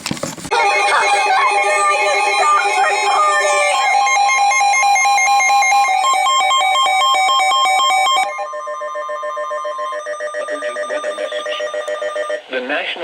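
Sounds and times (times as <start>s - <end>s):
pulsing electronic alert tones: 0.5s - 12.4s.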